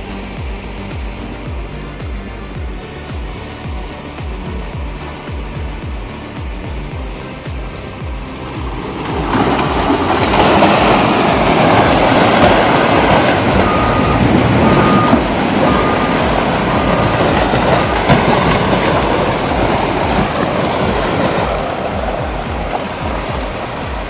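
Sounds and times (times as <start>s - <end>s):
heavy vehicle rumbling: 0.0s - 24.0s
short beeps: 12.7s - 19.2s.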